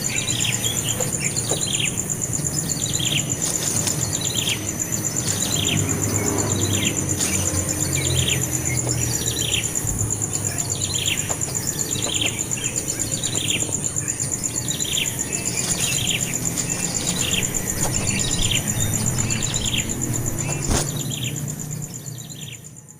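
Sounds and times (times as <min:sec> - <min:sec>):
high pulsing buzz: 0:00.0 - 0:22.1
bird chirping: 0:00.0 - 0:22.8.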